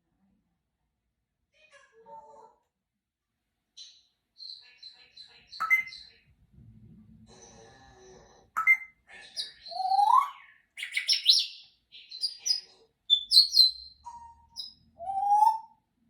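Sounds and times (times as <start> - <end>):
parrot whistling and chirping: 3.8 - 6.2, 8.6 - 15.8.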